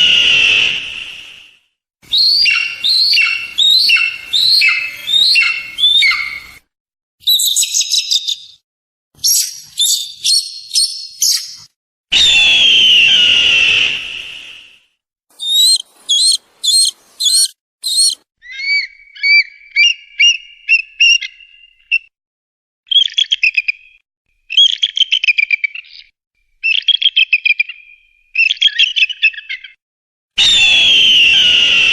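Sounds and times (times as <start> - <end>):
eagle calling: 2.1 - 6.6, 15.3 - 21.4.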